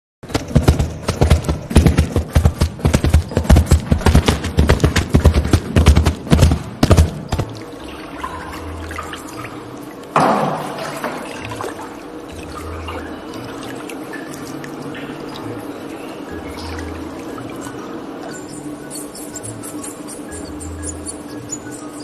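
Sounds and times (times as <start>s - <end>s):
taps and thumps: 0.2s - 7.6s.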